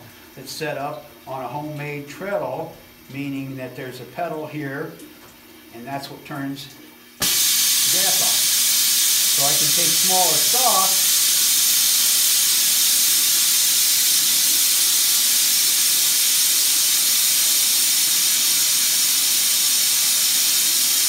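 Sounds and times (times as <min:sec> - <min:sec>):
gas torch flame hissing: 0:07.2 - 0:21.0.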